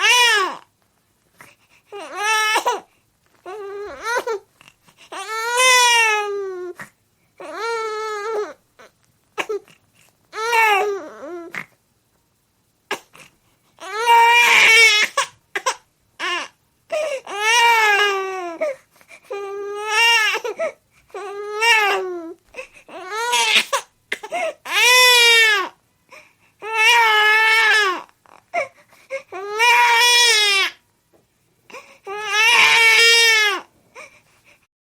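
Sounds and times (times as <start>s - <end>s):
baby crying: 0.0s - 0.7s, 1.9s - 4.5s, 5.1s - 9.7s, 10.3s - 11.7s, 13.8s - 25.8s, 26.6s - 30.8s, 31.7s - 34.1s.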